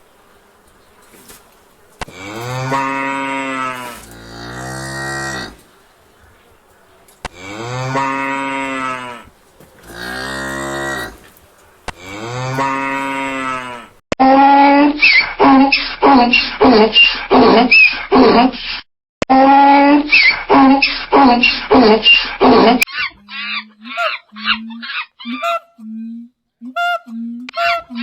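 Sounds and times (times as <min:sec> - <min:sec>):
cattle mooing: 0:02.0 - 0:06.4, 0:07.2 - 0:14.0.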